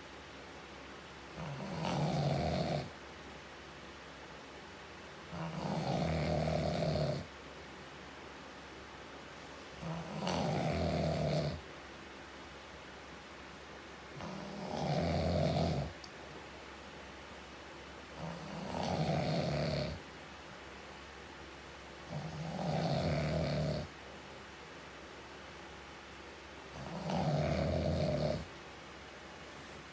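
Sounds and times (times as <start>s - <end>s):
man snoring: 1.4s - 2.9s, 5.4s - 7.3s, 9.8s - 11.6s, 14.2s - 15.9s, 18.2s - 20.0s, 22.1s - 23.9s, 26.8s - 28.5s.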